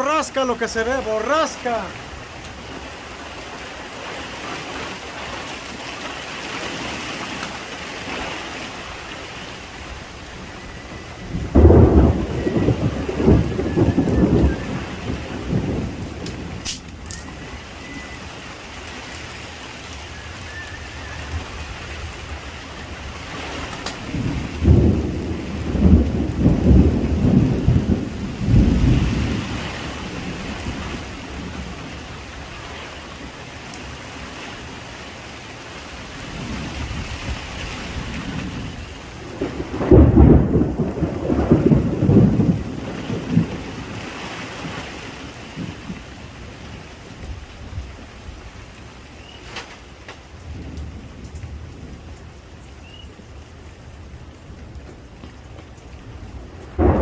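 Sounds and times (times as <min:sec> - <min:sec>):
thunder rumbling: 0:00.0 - 0:33.4, 0:36.1 - 0:49.3, 0:50.3 - 0:57.0
steady rain falling: 0:00.0 - 0:57.0.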